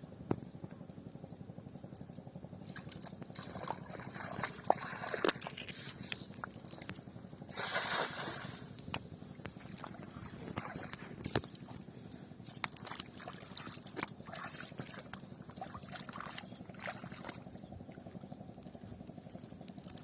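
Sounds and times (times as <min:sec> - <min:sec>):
steady low rumble: 0:00.0 - 0:20.0
water sloshing and splashing: 0:01.7 - 0:20.0
loud splash: 0:07.5 - 0:08.6.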